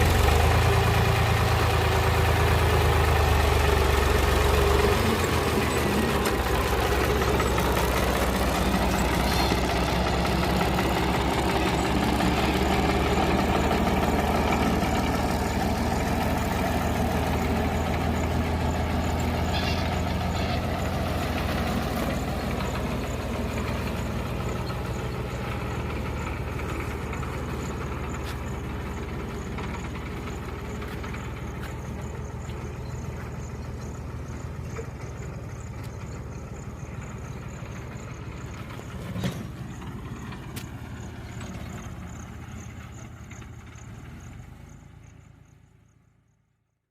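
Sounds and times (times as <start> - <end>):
tractor diesel engine running: 0.0 - 46.5.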